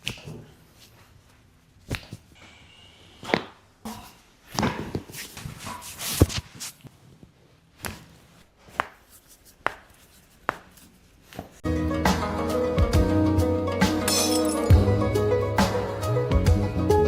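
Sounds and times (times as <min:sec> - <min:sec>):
hands and clothing rustling: 0:04.9 - 0:11.6.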